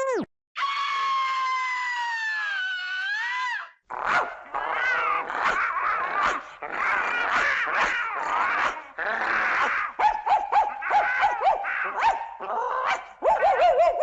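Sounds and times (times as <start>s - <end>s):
dog yelping and whimpering: 4.1s - 14.0s.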